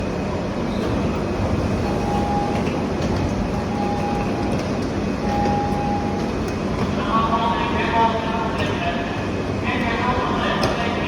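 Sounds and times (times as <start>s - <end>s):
low train and station rumble: 0.0s - 11.0s
platform door warning beep: 1.6s - 6.5s.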